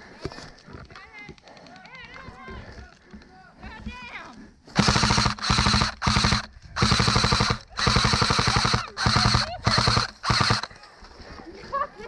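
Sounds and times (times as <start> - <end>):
airsoft gun firing bursts: 4.8 - 10.8.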